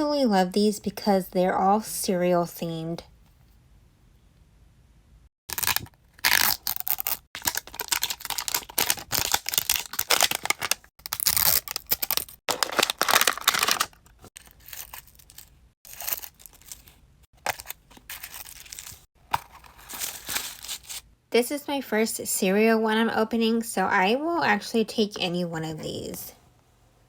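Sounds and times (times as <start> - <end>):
packaging tearing and crinkling: 5.5 - 21.0.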